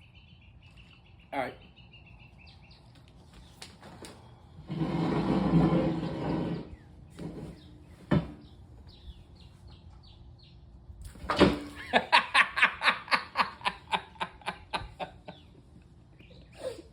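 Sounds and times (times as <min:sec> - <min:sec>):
person laughing: 0:11.8 - 0:15.5.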